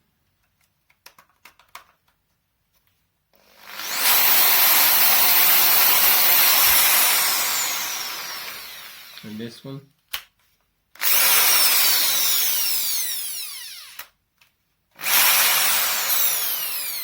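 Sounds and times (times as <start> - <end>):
hammer drill motor whining: 3.4 - 9.4, 11.0 - 14.2, 15.0 - 17.0.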